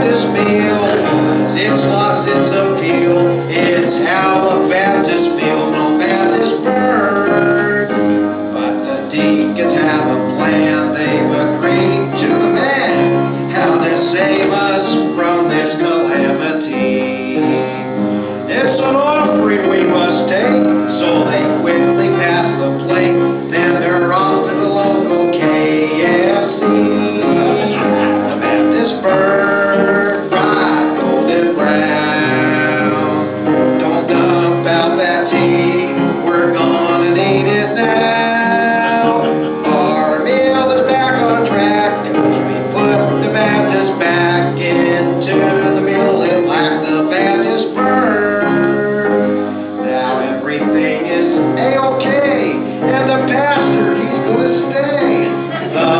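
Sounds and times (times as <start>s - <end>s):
guitar music: 0.0s - 55.9s
man and woman singing: 0.0s - 55.9s.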